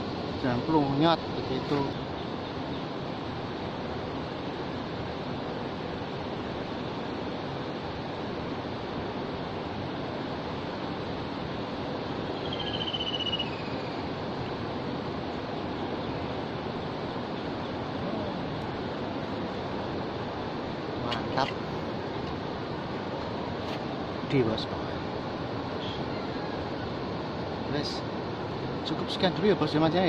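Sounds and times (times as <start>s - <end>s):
shallow river water flowing: 0.0s - 30.0s
short high chirp: 12.4s - 13.9s.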